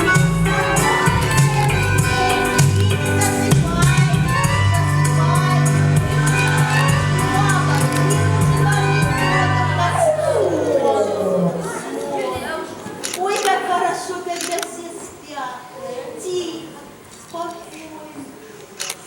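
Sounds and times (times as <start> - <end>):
upbeat music with bass line: 0.0 - 11.2.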